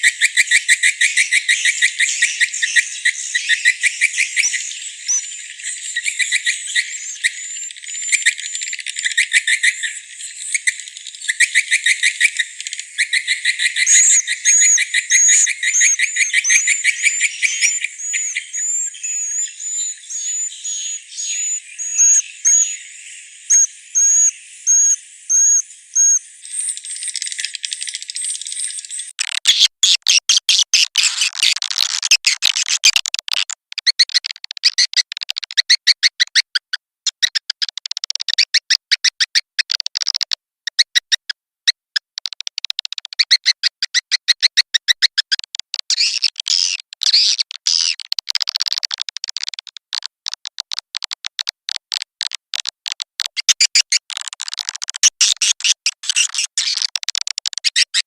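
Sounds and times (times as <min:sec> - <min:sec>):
many birds twittering: 0:00.0 - 0:29.2
high bird chirps: 0:00.0 - 0:36.3, 0:42.3 - 0:48.1, 0:53.4 - 0:56.9.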